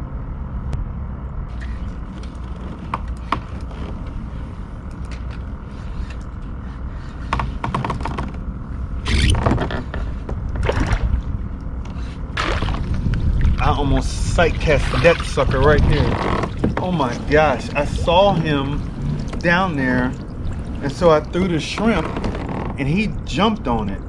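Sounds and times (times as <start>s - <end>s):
steady low rumble: 0.0s - 24.0s
rush of noise: 10.6s - 23.6s
fishing gear clicks and creaks: 15.6s - 17.5s, 21.8s - 22.8s.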